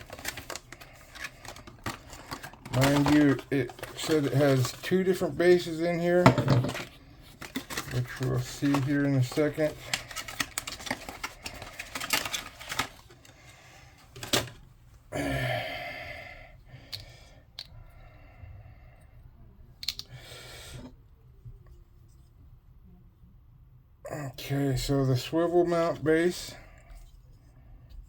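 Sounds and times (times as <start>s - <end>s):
plastic parts clicking and rattling: 0.0s - 13.4s, 14.0s - 14.6s, 19.8s - 20.1s
packaging rustling: 0.0s - 14.6s.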